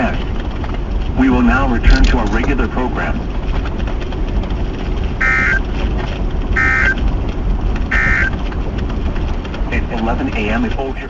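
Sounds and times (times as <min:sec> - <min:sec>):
steady low rumble: 0:00.0 - 0:11.0
harsh warbling data bursts: 0:05.2 - 0:05.6, 0:06.6 - 0:07.0, 0:07.9 - 0:08.4.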